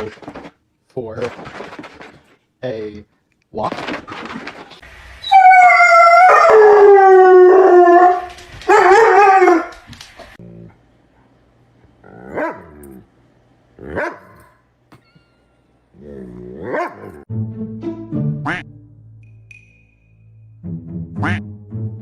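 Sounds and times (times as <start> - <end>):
dog howling: 5.2 - 9.8, 16.0 - 17.2.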